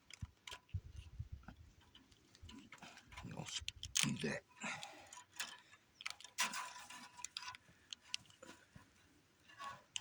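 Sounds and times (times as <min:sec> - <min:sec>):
wire scraping: 0:05.1 - 0:10.0.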